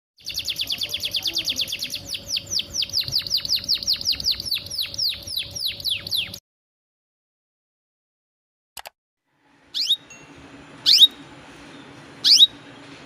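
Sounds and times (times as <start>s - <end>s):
canary singing: 0.2s - 6.4s, 9.6s - 12.9s.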